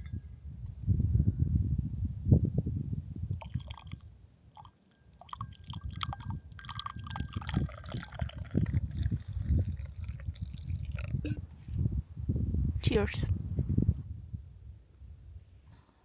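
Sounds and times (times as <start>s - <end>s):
wind on microphone: 0.0s - 4.2s, 5.3s - 15.8s
liquid sloshing: 4.6s - 11.4s
cup and whisk clinking: 4.9s - 8.8s.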